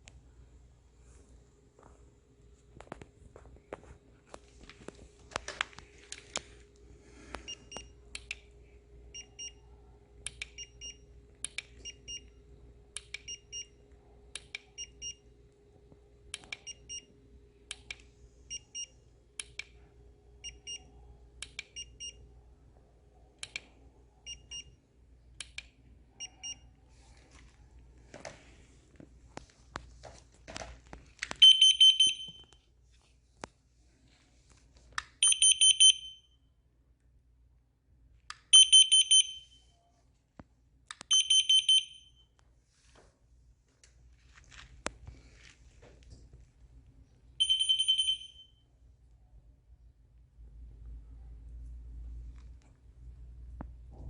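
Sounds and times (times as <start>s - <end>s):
loud alarm beep: 31.4s - 32.5s, 35.2s - 36.3s, 38.6s - 39.6s, 41.1s - 42.2s, 47.4s - 48.6s.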